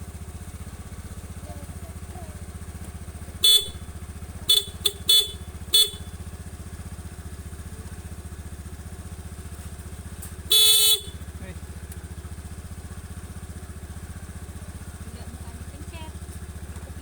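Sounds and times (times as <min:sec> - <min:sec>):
motorcycle engine idling: 0:00.0 - 0:17.0
motorcycle horn beeping: 0:03.3 - 0:06.4, 0:10.3 - 0:11.4.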